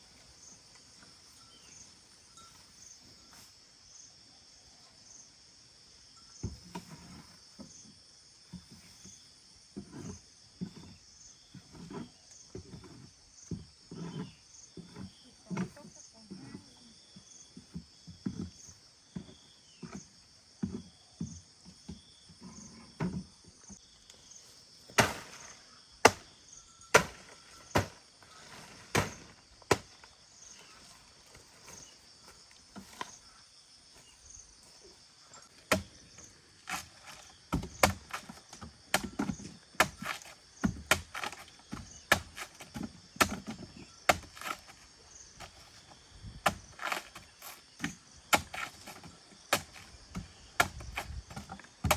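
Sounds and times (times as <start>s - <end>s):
insects chirping: 0.0s - 51.9s
sharp strikes on wood: 25.0s - 26.3s, 26.9s - 28.0s.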